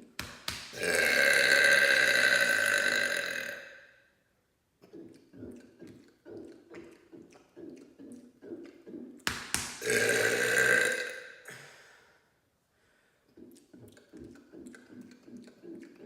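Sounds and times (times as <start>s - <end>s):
man's long loud burp: 0.8s - 3.9s, 9.8s - 11.5s
quick short gulps: 4.8s - 12.0s, 12.8s - 16.0s.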